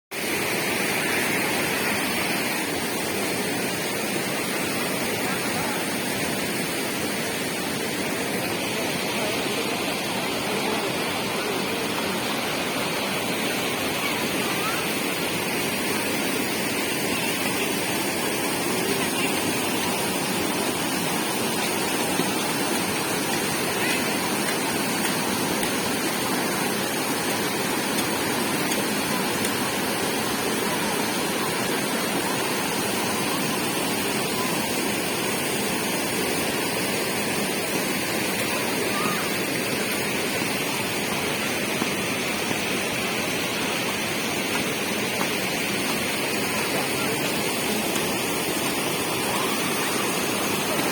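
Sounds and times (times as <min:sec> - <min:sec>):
river water rushing: 0:00.2 - 0:50.9.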